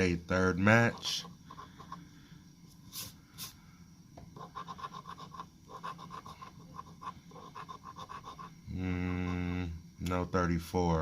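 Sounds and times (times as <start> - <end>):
scratch-off ticket being scratched: 4.4 - 8.5.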